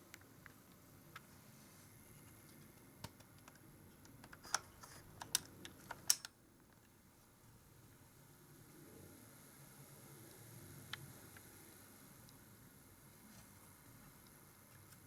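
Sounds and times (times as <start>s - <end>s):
faint steady background noise: 0.0s - 15.0s
light sharp clicks and taps: 2.1s - 7.0s.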